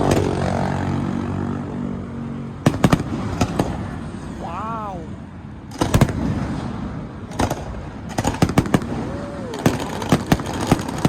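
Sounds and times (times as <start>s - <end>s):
fireworks bangs: 2.7s - 4.0s, 5.7s - 11.0s.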